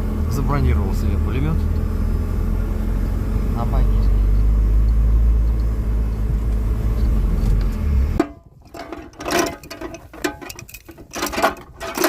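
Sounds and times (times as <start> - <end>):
buggy engine rumble: 0.0 - 12.0
metallic clicks and rattles: 8.2 - 12.0.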